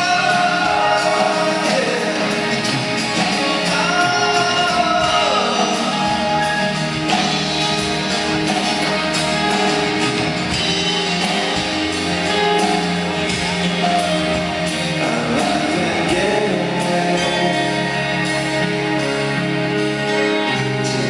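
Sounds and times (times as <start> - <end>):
rock band playing live: 0.0 - 21.0.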